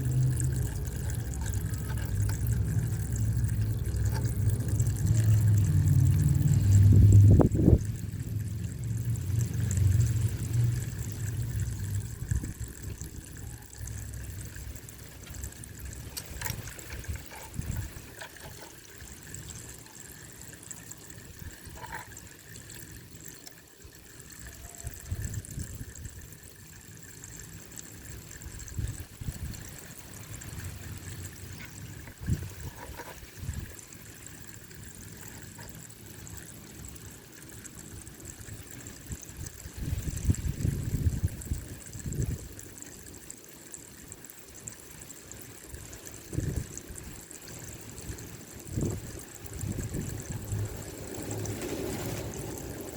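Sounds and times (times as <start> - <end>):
water pouring and trickling: 0.0 - 52.9
faint steady high tone: 13.3 - 14.1.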